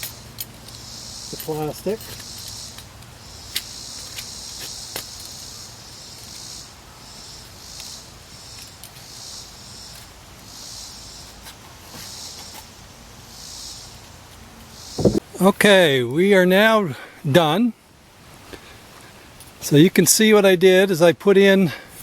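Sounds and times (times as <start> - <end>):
insects buzzing in chorus: 0.0 - 15.2.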